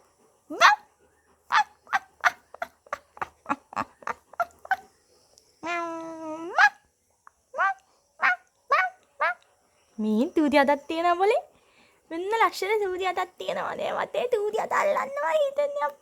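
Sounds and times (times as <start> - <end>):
dog barking: 0.5 - 0.9, 1.5 - 3.3.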